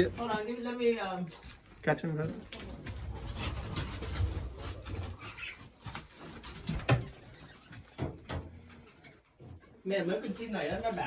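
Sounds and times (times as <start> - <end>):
budgies chirping and chattering: 2.3 - 11.0.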